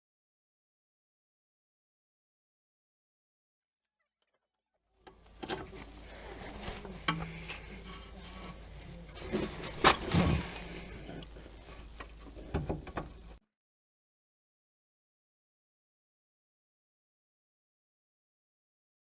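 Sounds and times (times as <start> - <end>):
low steady hum: 5.0 - 13.4.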